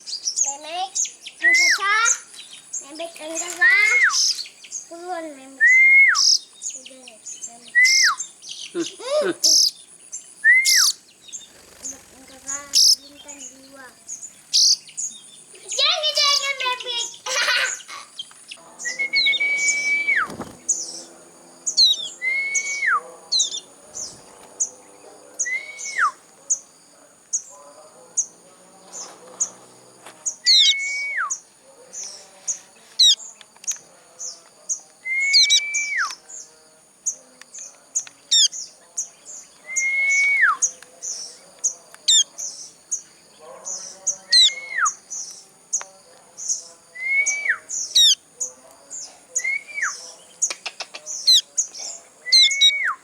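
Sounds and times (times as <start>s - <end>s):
very high chirps: 10.5s - 21.0s.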